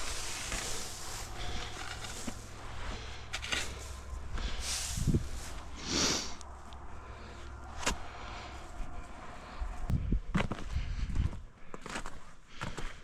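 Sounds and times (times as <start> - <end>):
straw rustling: 0.0 - 9.7
short breathy hiss: 4.6 - 6.4.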